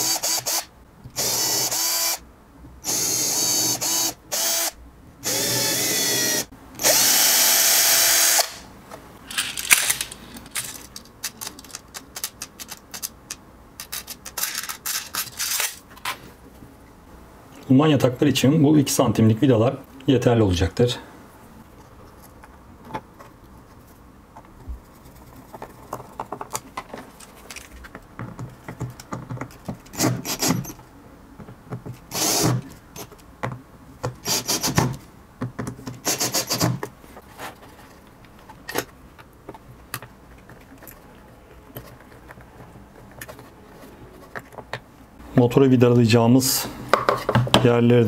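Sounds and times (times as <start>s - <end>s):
screws driven into wood: 0.0s - 2.2s, 2.9s - 8.6s, 30.0s - 30.8s, 32.1s - 33.1s, 34.2s - 34.9s, 36.0s - 36.8s
clicks and rattles of screws: 9.3s - 15.8s.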